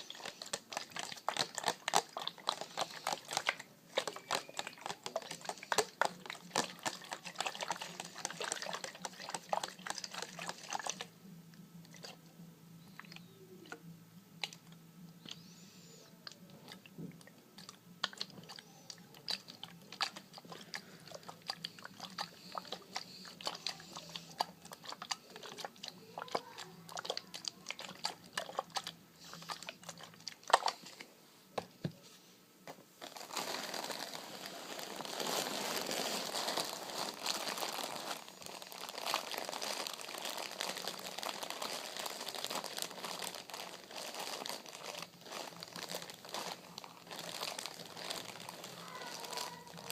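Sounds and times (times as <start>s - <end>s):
small clicks and crinkles: 32.8s - 49.9s.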